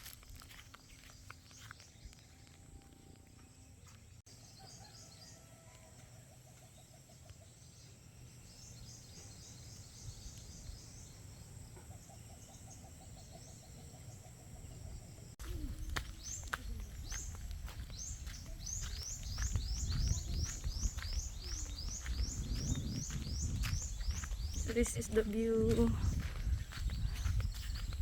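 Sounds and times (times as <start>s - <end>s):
birds chirping: 0.0s - 28.0s
low rumble: 15.5s - 28.0s.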